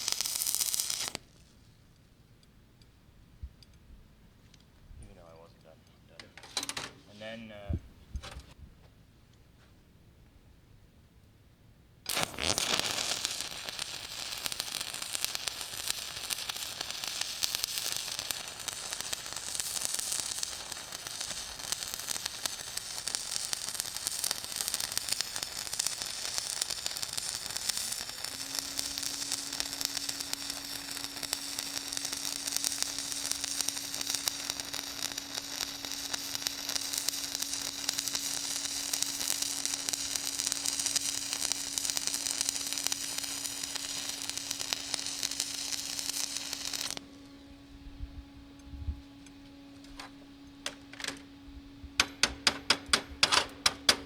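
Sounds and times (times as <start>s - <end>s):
welding arc crackling: 0.0s - 1.5s, 12.1s - 47.3s
low hum: 46.9s - 53.6s.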